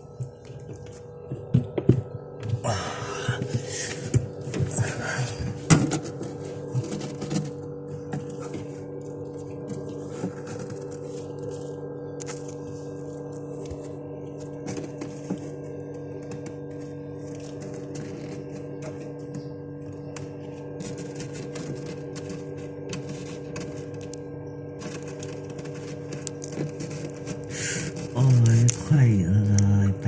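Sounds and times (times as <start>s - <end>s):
low hum of held tones: 0.0s - 30.0s.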